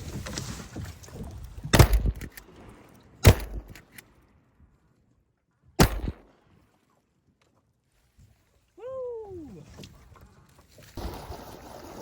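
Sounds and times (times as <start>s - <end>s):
shotgun shots: 1.7s - 2.2s, 3.2s - 3.8s, 5.8s - 6.4s.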